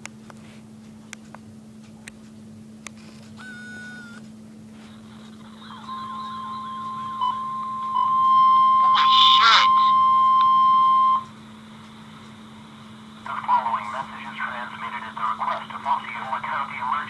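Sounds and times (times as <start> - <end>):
steady attention tone: 3.4 - 17.0
wavering warble: 5.0 - 11.3.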